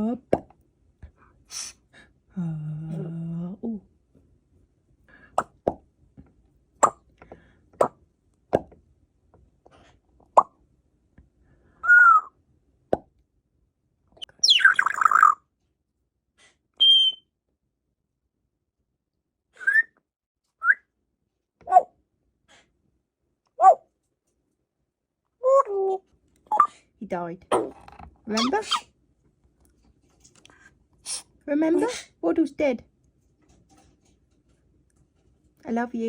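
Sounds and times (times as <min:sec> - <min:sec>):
parrot whistling: 0:11.8 - 0:12.3, 0:14.2 - 0:15.4, 0:16.8 - 0:17.2, 0:19.6 - 0:19.9
harsh parrot call: 0:14.2 - 0:15.4, 0:28.4 - 0:28.8
parrot chirping: 0:14.2 - 0:15.4, 0:16.8 - 0:17.2, 0:26.5 - 0:26.7, 0:28.4 - 0:28.9
parrot popping: 0:27.5 - 0:28.8.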